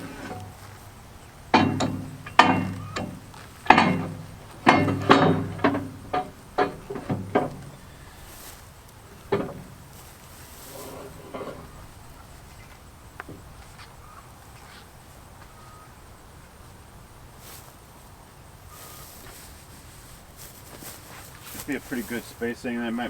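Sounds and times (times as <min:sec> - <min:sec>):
steel forks clanking on bucket: 0:00.0 - 0:00.8, 0:01.5 - 0:12.2.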